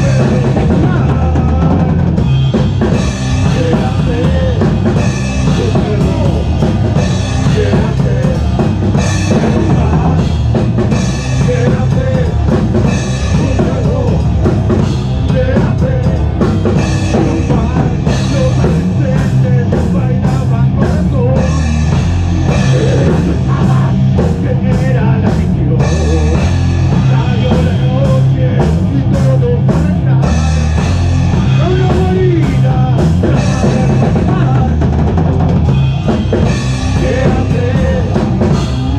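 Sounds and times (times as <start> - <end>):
drum kit pounding: 0.0 - 38.9
heavy rock band playing: 0.0 - 38.9.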